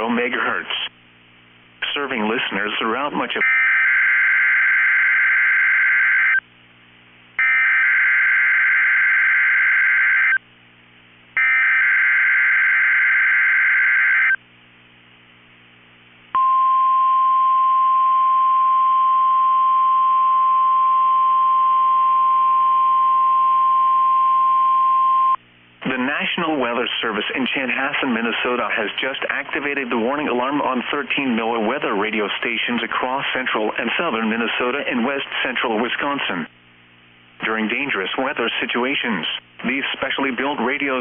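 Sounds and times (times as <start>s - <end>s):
steady warning alarm tone: 3.4s - 6.4s, 7.4s - 10.4s, 11.4s - 14.4s.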